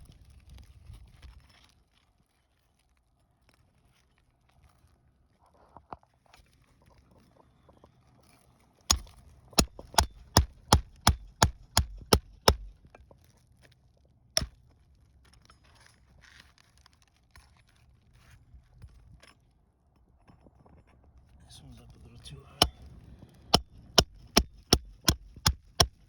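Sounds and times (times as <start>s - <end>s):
hammer striking metal: 8.9s - 12.7s, 22.6s - 22.9s, 23.6s - 26.0s.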